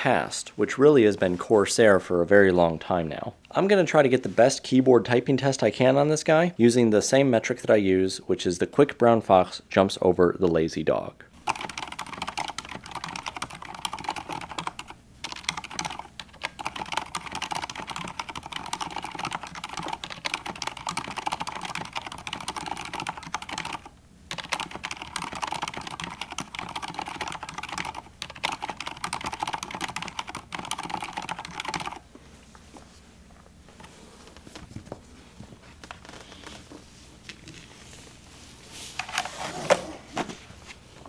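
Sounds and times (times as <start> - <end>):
mechanical keyboard typing: 11.4 - 32.0.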